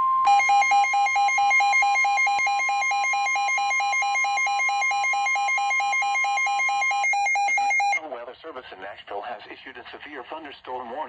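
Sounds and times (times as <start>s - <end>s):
pulsing alert beeps: 0.3s - 8.0s
steady warning alarm tone: 0.3s - 8.0s.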